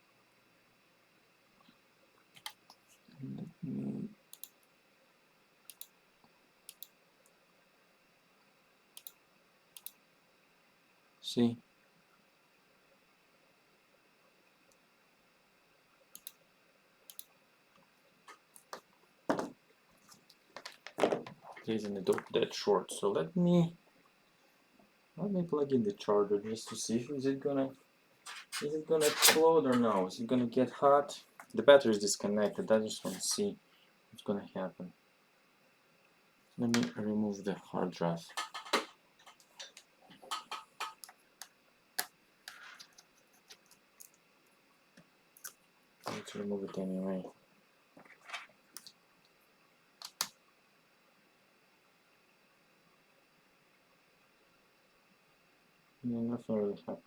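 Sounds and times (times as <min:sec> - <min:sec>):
light clicks of small tools: 0:09.8 - 0:10.0
small objects clicking and tapping: 0:38.3 - 0:44.2.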